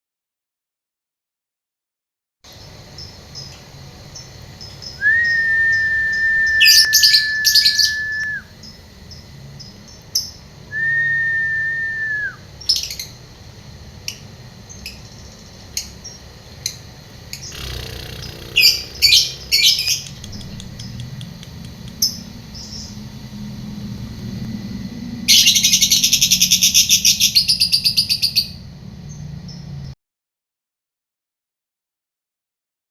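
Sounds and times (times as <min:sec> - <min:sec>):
long steady whistle: 0:05.0 - 0:08.5, 0:10.7 - 0:12.5
lovebird chirping: 0:17.4 - 0:22.9
fast chattering trill: 0:17.5 - 0:21.2.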